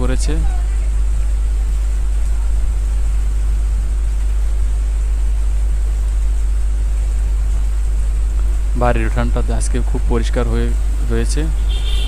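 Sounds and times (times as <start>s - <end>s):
low rumble: 0.0s - 12.0s
rain falling: 0.0s - 12.0s.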